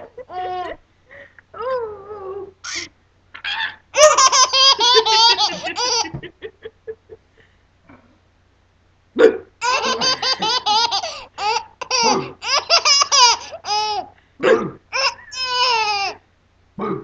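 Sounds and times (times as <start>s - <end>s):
baby laughing: 0.0s - 0.8s, 2.7s - 6.4s, 9.6s - 14.2s, 14.9s - 16.2s.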